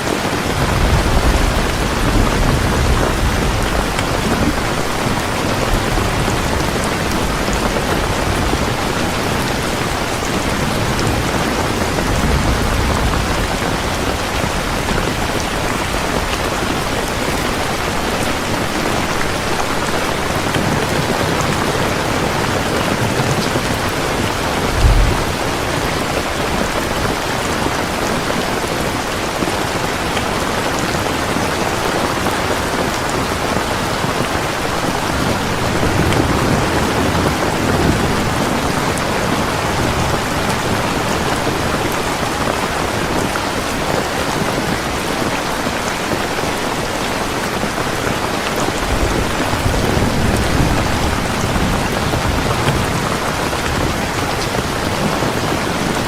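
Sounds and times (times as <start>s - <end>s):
heavy rain: 0.0s - 56.0s
low rumbles: 24.4s - 26.6s
low thump: 24.6s - 25.6s.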